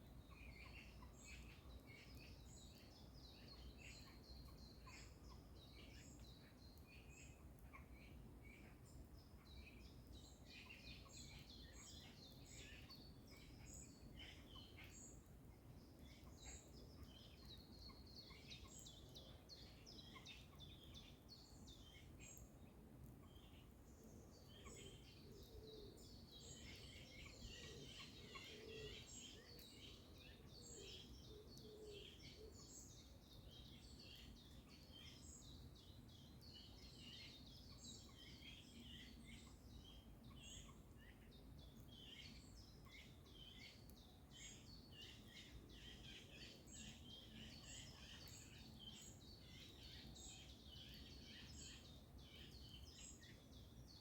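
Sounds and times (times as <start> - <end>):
songbirds chirping and twittering: 0.0 - 54.0
lower repeated bird calls: 24.4 - 35.7.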